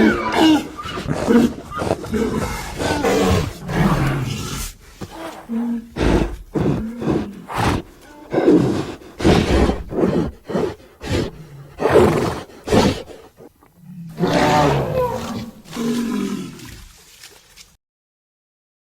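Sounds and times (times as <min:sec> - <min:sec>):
monster roars and growls: 0:00.0 - 0:04.7.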